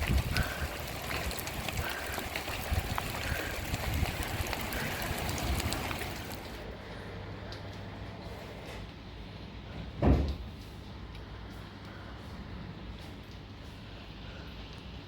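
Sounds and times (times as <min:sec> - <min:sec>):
water trickling: 0:00.0 - 0:06.6
rain drops pattering: 0:00.0 - 0:06.7.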